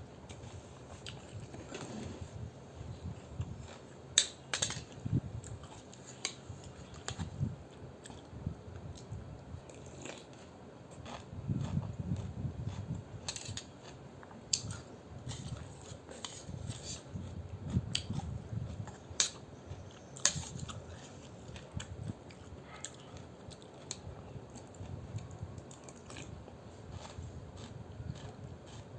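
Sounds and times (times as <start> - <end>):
chewing: 3.3 - 4.0, 4.7 - 7.2, 9.7 - 28.9.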